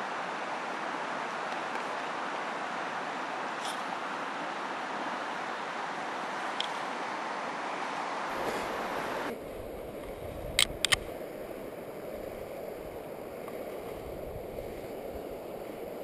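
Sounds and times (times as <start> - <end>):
river water running: 0.0 - 16.0
sharp clicks: 10.6 - 11.1.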